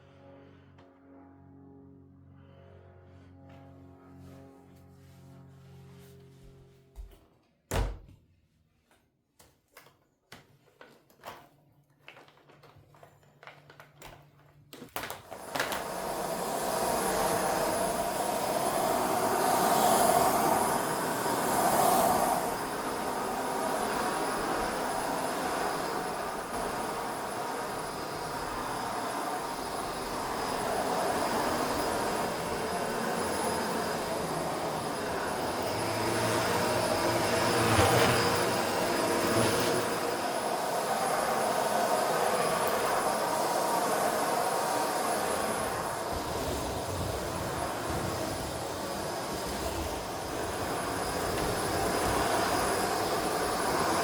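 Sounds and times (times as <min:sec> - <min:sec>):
appliance motor running: 0:15.3 - 0:54.0.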